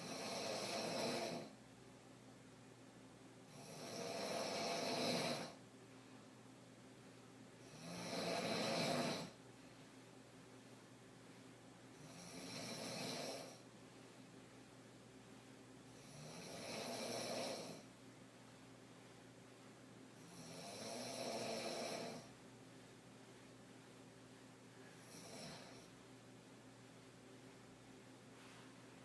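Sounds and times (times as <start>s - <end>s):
woman snoring: 0.0s - 1.5s, 3.5s - 5.6s, 7.6s - 9.4s, 12.0s - 13.6s, 15.9s - 17.9s, 20.2s - 22.3s, 25.0s - 25.9s.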